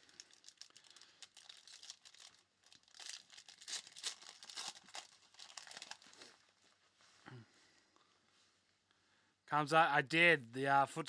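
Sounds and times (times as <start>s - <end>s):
wrapper tearing and crinkling: 0.0s - 6.4s.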